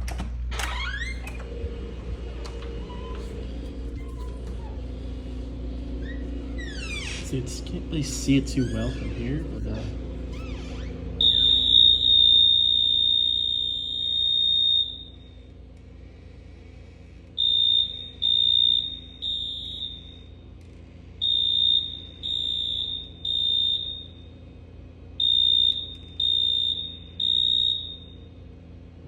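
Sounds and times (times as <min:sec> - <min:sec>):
doorbell signaller alarm tone: 0:11.2 - 0:15.4, 0:17.4 - 0:20.3, 0:21.2 - 0:24.2, 0:25.2 - 0:28.2.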